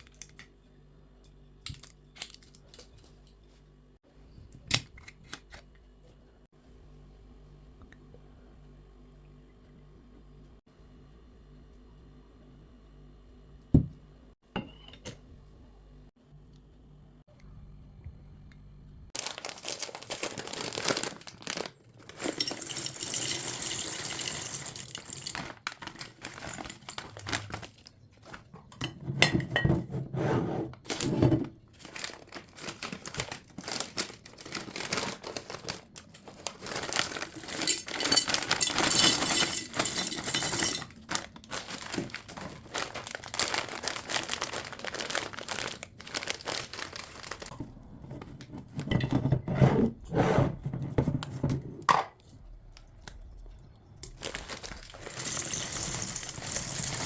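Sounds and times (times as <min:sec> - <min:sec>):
packaging crinkling and rustling: 0:19.2 - 0:28.5, 0:30.9 - 0:48.8, 0:54.0 - 0:57.0.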